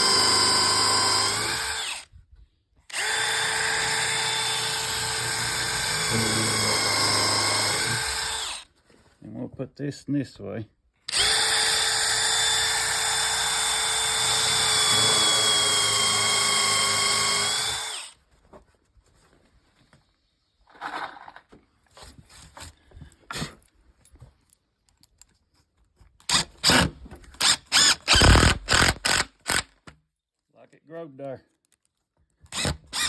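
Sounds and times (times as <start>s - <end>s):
power drill whining into wood: 0.0s - 2.1s, 2.9s - 8.6s, 11.1s - 18.2s, 26.3s - 29.9s, 32.5s - 33.0s.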